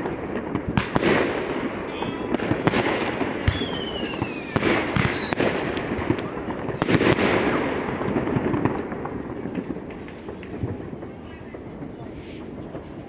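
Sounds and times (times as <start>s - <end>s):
fireworks bangs and pops: 0.0s - 13.0s
falling firework whistle: 2.0s - 5.5s.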